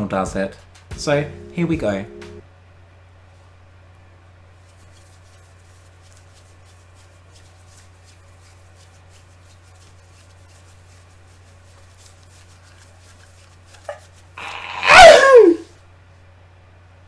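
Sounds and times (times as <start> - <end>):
faint clicks and rustles: 3.9 - 14.4.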